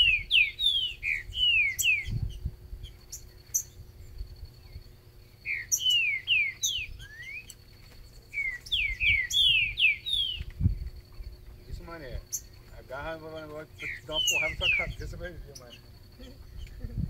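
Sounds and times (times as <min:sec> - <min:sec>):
bird singing loud whistles: 0:00.0 - 0:03.8, 0:05.4 - 0:07.6, 0:08.3 - 0:10.6, 0:13.7 - 0:15.8.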